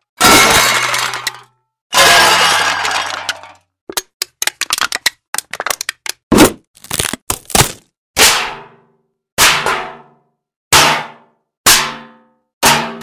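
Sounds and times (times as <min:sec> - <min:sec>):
sharp cracks and snaps: 0:03.9 - 0:07.9.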